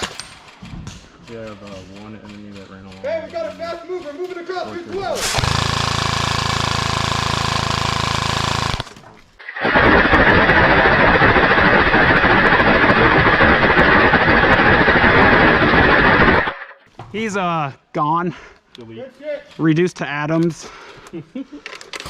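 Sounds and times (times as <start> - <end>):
airsoft gun full-auto bursts: 5.2 - 16.7.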